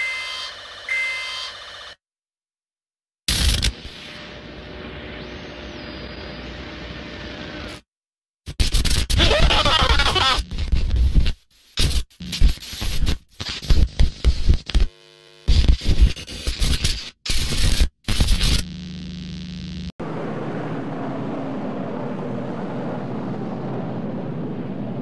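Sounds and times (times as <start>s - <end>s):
distorted static noise: 3.3s - 7.8s, 8.6s - 19.9s.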